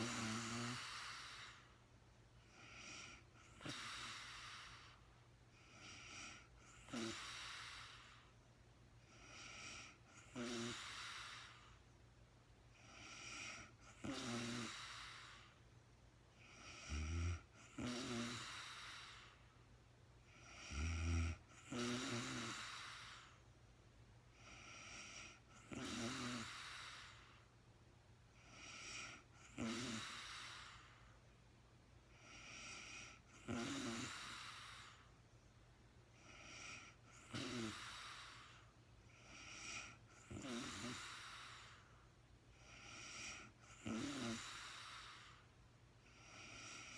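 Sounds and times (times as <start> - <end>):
woman snoring: 0.0 - 1.8, 2.5 - 5.0, 5.7 - 8.3, 9.2 - 11.8, 12.8 - 15.6, 16.4 - 19.4, 20.4 - 23.4, 24.4 - 27.4, 28.4 - 31.0, 32.2 - 35.1, 36.2 - 41.9, 42.6 - 45.5, 46.1 - 46.9.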